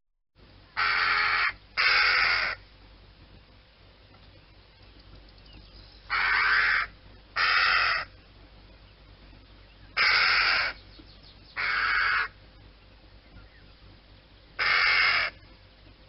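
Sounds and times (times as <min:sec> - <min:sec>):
crow cawing: 0:00.8 - 0:02.6, 0:06.1 - 0:08.1, 0:10.0 - 0:10.8, 0:11.6 - 0:12.4, 0:14.6 - 0:15.4.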